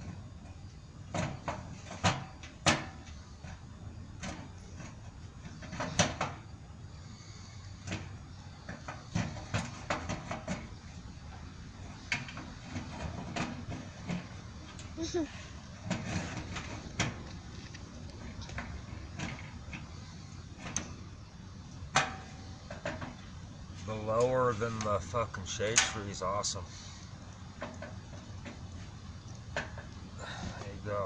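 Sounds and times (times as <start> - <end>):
metal knocks and clanks: 25.6 - 26.2.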